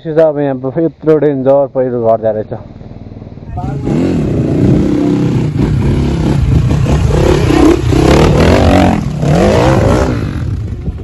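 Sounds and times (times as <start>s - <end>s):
motorcycle engine revving: 2.7s - 11.0s.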